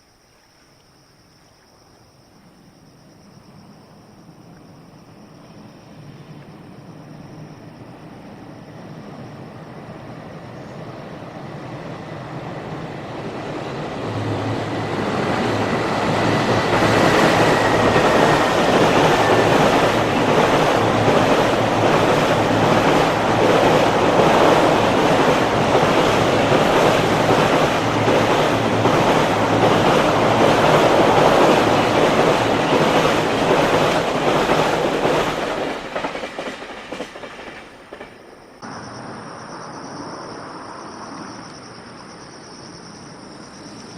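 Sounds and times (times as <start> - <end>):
freight train wheels clattering: 12.5 - 38.4.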